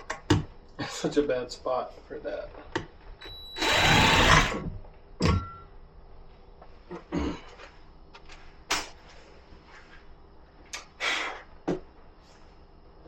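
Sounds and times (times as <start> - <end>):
handling knocks and clunks: 0.0 - 0.6.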